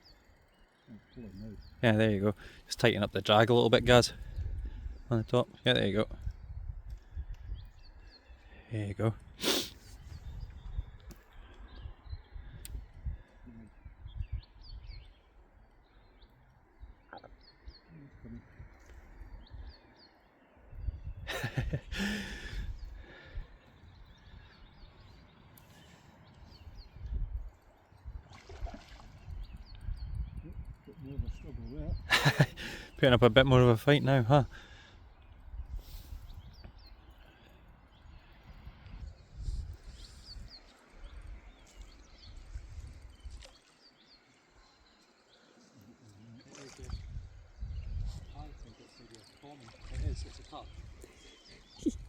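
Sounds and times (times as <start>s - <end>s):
wind rumble on microphone: 3.8s - 5.3s, 6.0s - 8.4s, 9.1s - 16.2s, 20.7s - 25.1s, 26.2s - 33.4s, 34.4s - 43.6s, 46.8s - 48.8s, 49.7s - 52.0s
faint bird chirps: 9.2s - 21.8s, 33.9s - 52.0s.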